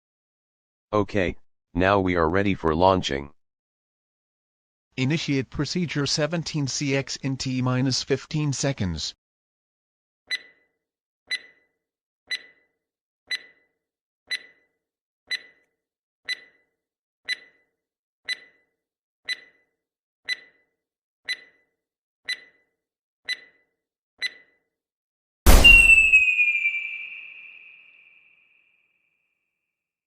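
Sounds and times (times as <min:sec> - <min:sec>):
short sharp electronic beeps: 0:25.5 - 0:28.1.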